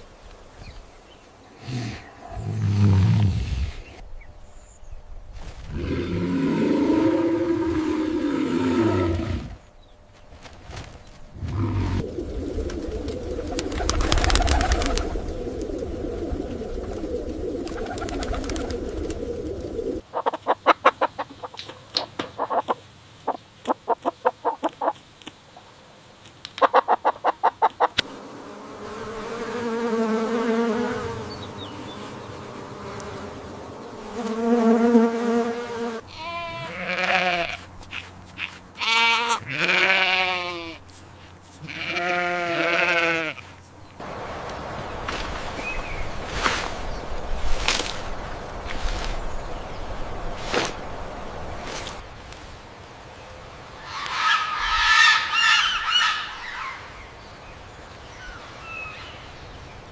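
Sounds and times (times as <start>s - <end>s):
chicken clucking: 20.1s - 25.0s, 26.6s - 28.0s
quavering bleat-like calls: 36.0s - 37.7s, 38.4s - 40.9s, 41.6s - 43.6s.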